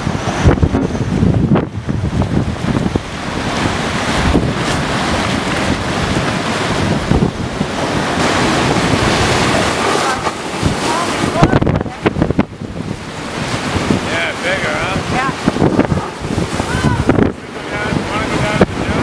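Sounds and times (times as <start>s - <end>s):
heavy surf: 0.0s - 19.0s
wind buffeting the microphone: 0.0s - 19.0s.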